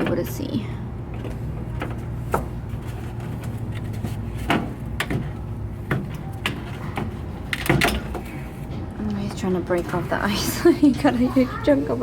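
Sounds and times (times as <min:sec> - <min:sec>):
steady low hum: 0:00.0 - 0:12.0
tools knocking and clattering: 0:03.1 - 0:10.2.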